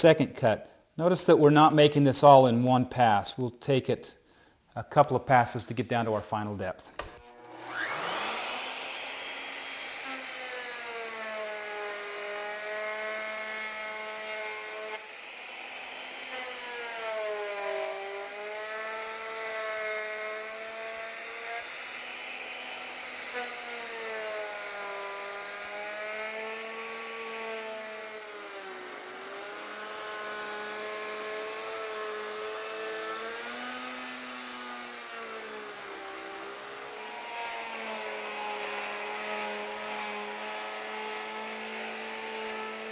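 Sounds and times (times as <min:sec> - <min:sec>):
router cutting wood: 0:07.0 - 0:42.9.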